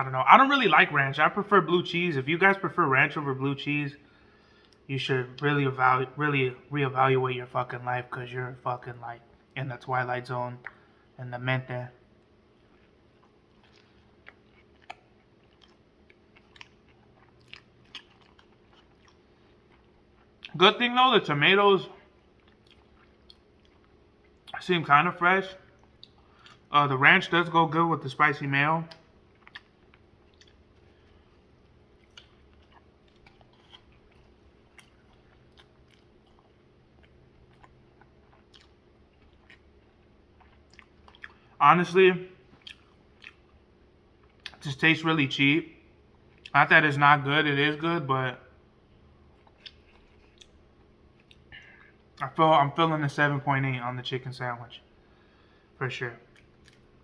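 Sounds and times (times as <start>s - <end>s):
low steady hum: 0.0s - 57.0s
person chewing crispy food: 12.2s - 20.6s, 22.0s - 24.6s, 25.6s - 26.7s, 28.9s - 41.6s, 42.4s - 44.6s, 49.2s - 52.2s, 56.3s - 57.0s.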